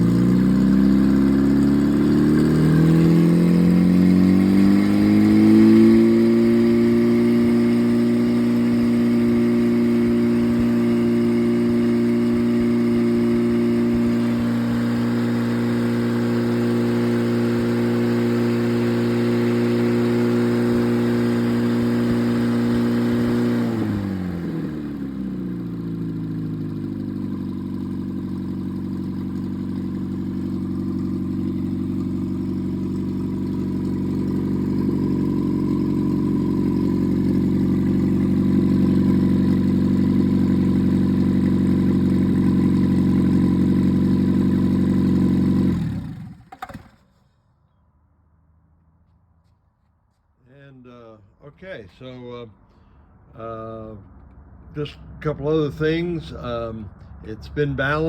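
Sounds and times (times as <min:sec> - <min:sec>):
engine running without muffler: 0:00.0 - 0:47.1.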